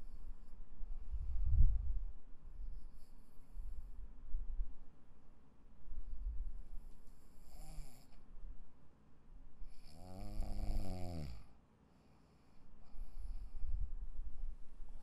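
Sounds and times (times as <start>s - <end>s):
person snoring: 7.4s - 8.2s, 9.7s - 11.5s
low breathing: 11.3s - 14.4s.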